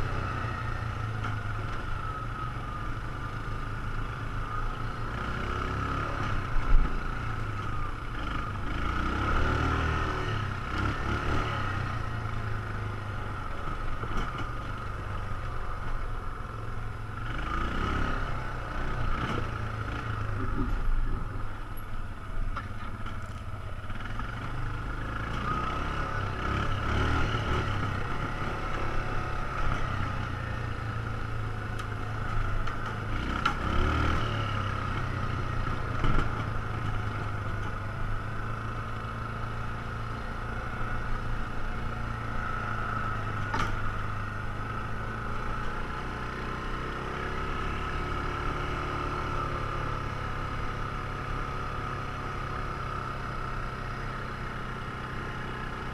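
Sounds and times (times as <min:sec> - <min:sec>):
atv engine running: 0:00.0 - 0:55.9.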